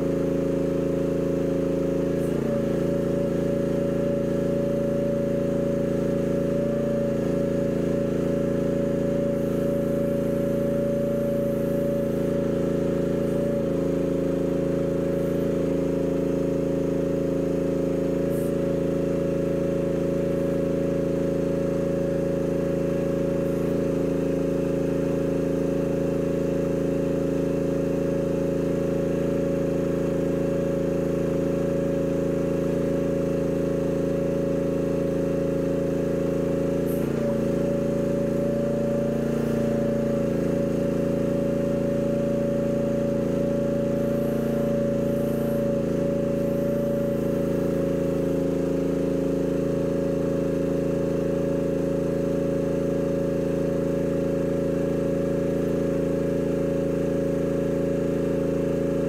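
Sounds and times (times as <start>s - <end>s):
excavator engine running: 0.0s - 26.2s, 35.1s - 49.9s.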